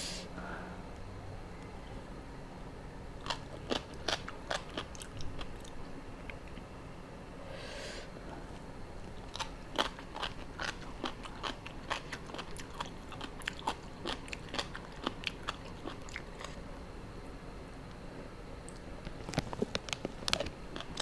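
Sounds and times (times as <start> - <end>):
chewing crunchy food: 3.2 - 6.7, 9.0 - 16.7, 18.6 - 21.0.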